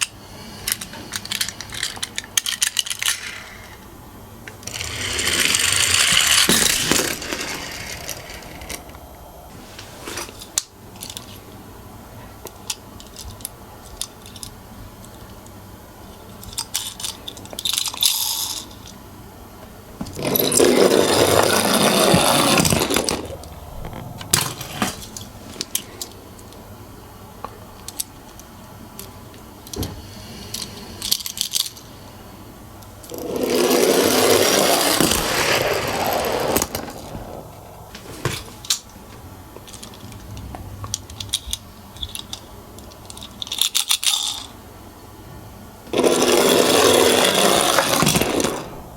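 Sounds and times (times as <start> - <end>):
toy cars rattling down a track: 0.0 - 3.8, 4.6 - 8.9, 16.4 - 18.9, 20.2 - 23.4, 33.0 - 37.4, 43.0 - 44.5, 45.9 - 48.8.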